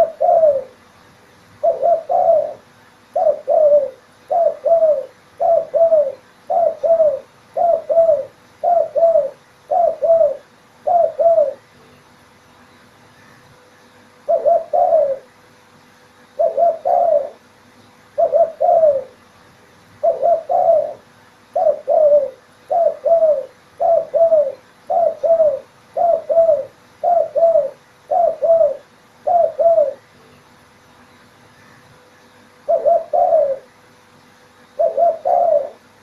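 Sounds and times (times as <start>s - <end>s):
dove cooing: 0.0s - 0.8s, 1.6s - 11.7s, 14.2s - 15.3s, 16.4s - 17.5s, 18.2s - 19.3s, 20.0s - 30.2s, 32.6s - 33.7s, 34.7s - 36.0s.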